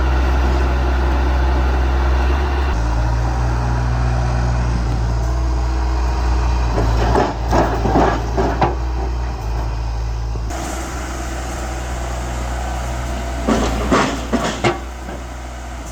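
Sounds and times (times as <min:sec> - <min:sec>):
diesel engine running: 0:00.0 - 0:15.9
clanks and knocks: 0:10.5 - 0:15.9.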